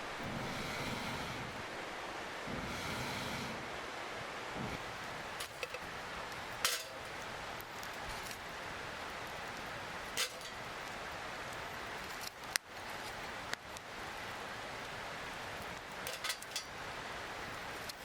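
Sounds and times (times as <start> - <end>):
steady hiss: 0.0 - 18.0
metal cookware clinking: 6.6 - 7.1, 10.2 - 10.6, 16.1 - 16.7.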